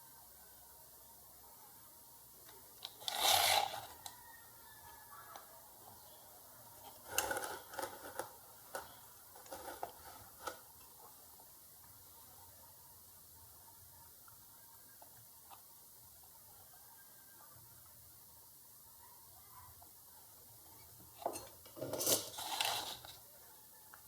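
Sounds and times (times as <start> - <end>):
rustling scrape of wires: 21.8 - 23.2.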